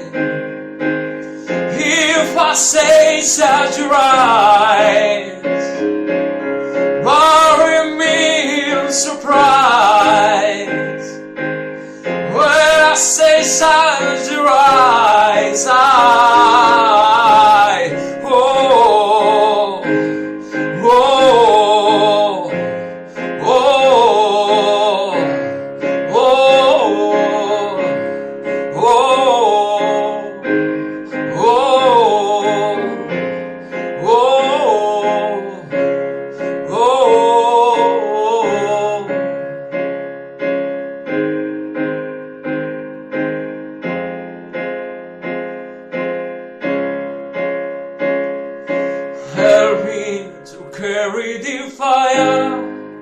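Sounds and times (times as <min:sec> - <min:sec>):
wordless singing voice: 0:00.0 - 0:00.4, 0:01.3 - 0:05.9, 0:06.6 - 0:39.4, 0:48.8 - 0:53.0
piano and keyboard song: 0:00.0 - 0:53.0.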